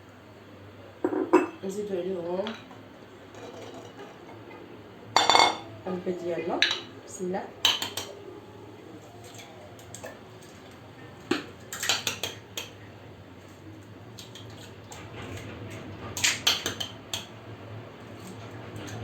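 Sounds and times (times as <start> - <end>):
clinks against mixing bowl: 1.0 - 1.7, 5.2 - 5.7, 6.6 - 7.0, 7.6 - 8.2.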